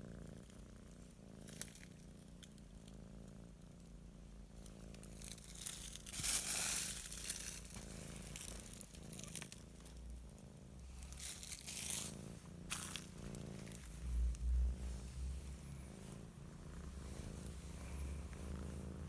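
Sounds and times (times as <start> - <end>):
cat purring: 0.0 - 19.0
crinkly rustling: 4.9 - 10.1, 10.9 - 19.0.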